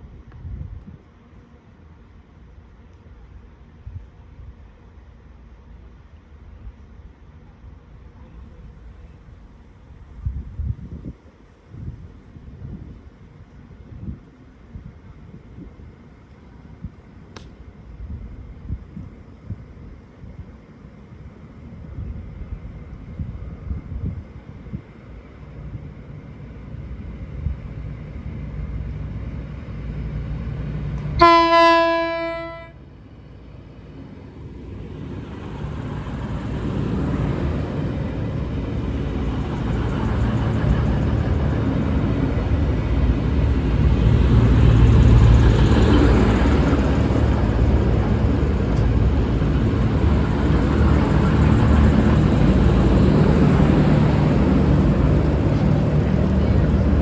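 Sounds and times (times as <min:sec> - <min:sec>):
train engines and wheels running: 0:00.0 - 0:57.0
train horn blast: 0:31.1 - 0:32.9.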